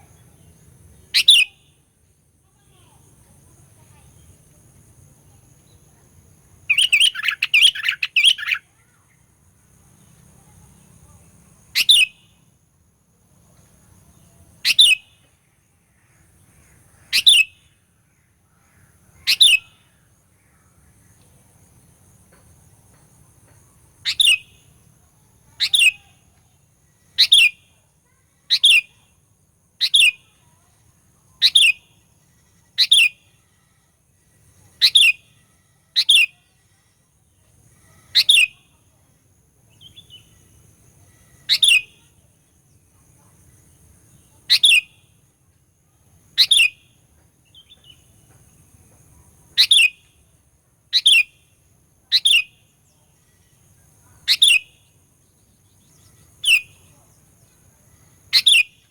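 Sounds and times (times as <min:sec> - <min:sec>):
bird chattering: 0:01.1 - 0:01.6, 0:06.7 - 0:09.0, 0:11.8 - 0:12.2, 0:14.6 - 0:15.0, 0:17.0 - 0:17.5, 0:18.7 - 0:19.9, 0:24.0 - 0:24.5, 0:25.5 - 0:26.2, 0:27.2 - 0:27.6, 0:28.4 - 0:29.0, 0:29.8 - 0:30.7, 0:31.4 - 0:31.8, 0:32.6 - 0:33.2, 0:34.6 - 0:35.4, 0:37.8 - 0:38.7, 0:41.2 - 0:42.0, 0:44.1 - 0:44.9, 0:46.3 - 0:46.8, 0:49.6 - 0:50.0, 0:50.9 - 0:51.3, 0:52.1 - 0:52.5, 0:54.1 - 0:54.7, 0:56.0 - 0:57.0, 0:58.3 - 0:58.9.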